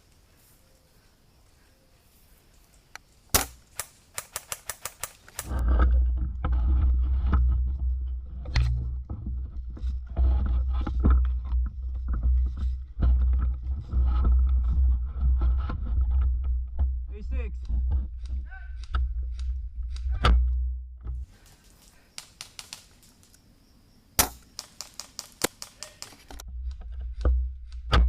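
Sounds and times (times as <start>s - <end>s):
airsoft gun shots: 3.3s - 5.1s, 24.2s - 26.2s
scraping and rustling: 5.2s - 16.9s.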